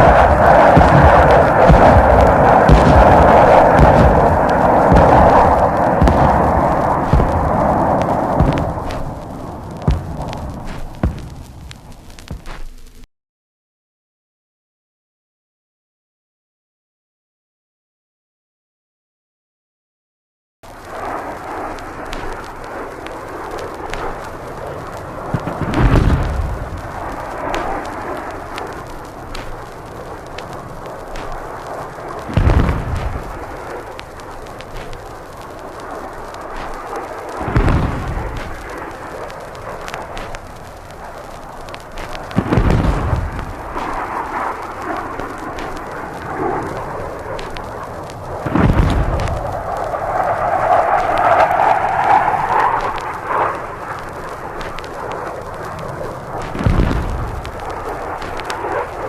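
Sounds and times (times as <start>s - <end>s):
heavy low boom: 0.0s - 12.5s, 32.2s - 33.6s, 37.3s - 38.8s, 41.6s - 46.5s, 48.4s - 49.9s, 56.6s - 57.8s
explosion rumble: 0.0s - 12.8s, 20.7s - 59.0s
sharp cracks: 0.0s - 13.0s, 20.6s - 59.0s.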